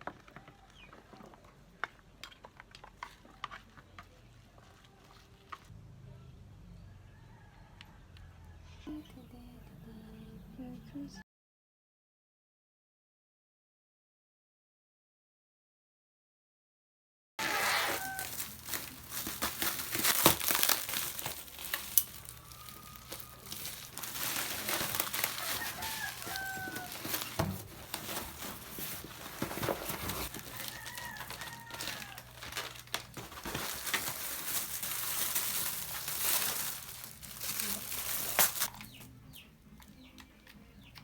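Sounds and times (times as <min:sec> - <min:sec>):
rustling and clicks: 0:17.8 - 0:39.1.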